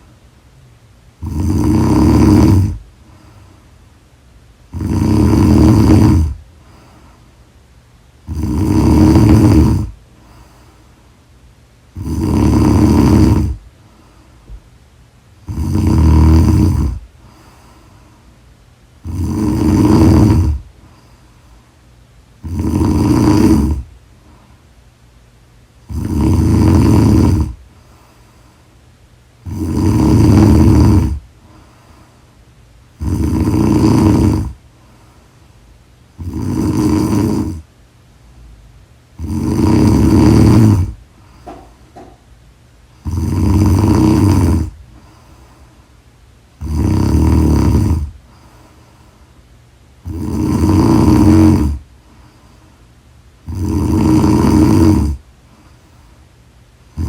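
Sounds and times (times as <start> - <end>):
loud snoring: 1.2 - 2.9, 4.7 - 6.4, 8.2 - 10.5, 11.9 - 13.6, 15.4 - 17.5, 19.0 - 20.7, 22.4 - 23.9, 25.8 - 27.6, 29.4 - 31.3, 32.9 - 34.6, 36.2 - 37.7, 39.2 - 42.2, 43.0 - 45.2, 46.6 - 48.4, 50.0 - 51.8, 53.4 - 55.2.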